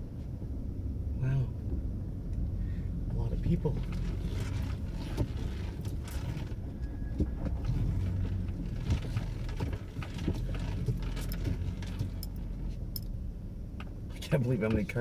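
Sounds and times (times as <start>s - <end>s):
engine and road rumble: 0.0s - 15.0s
light clicks and rattles: 3.8s - 13.2s.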